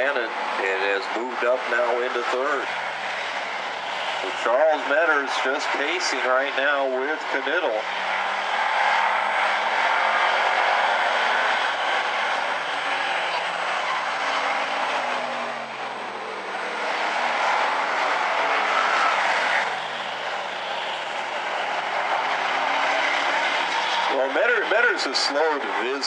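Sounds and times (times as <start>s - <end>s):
race car engines droning: 0.0s - 26.0s.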